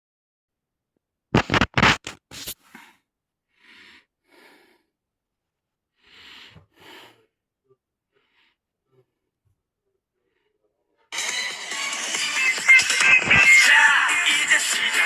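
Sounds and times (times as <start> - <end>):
person breathing: 2.5 - 5.0, 5.9 - 7.4, 8.1 - 9.2.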